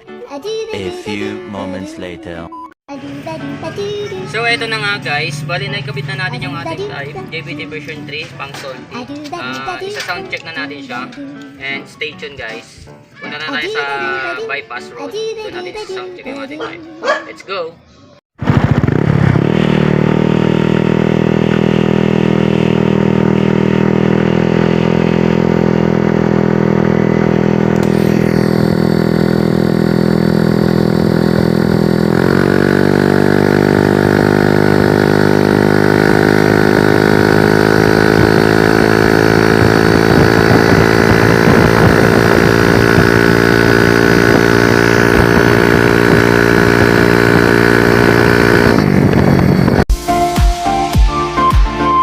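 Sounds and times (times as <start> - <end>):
scooter engine exhaust note: 18.4 - 49.9.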